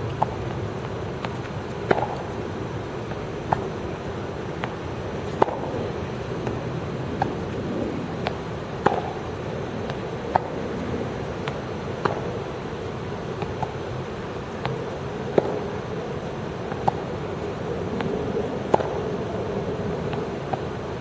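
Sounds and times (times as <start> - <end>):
tennis balls struck by rackets: 0.0 - 7.6, 8.2 - 10.6, 11.3 - 12.5, 13.3 - 13.8, 14.5 - 15.8, 16.6 - 17.1, 18.6 - 19.0
steady background hum: 0.0 - 21.0.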